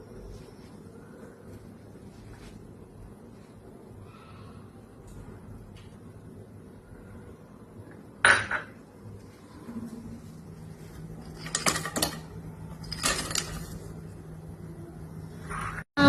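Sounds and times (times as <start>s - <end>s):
dishes clinking: 8.2s - 8.8s, 11.2s - 13.7s
utensils clattering on pots: 11.1s - 13.9s.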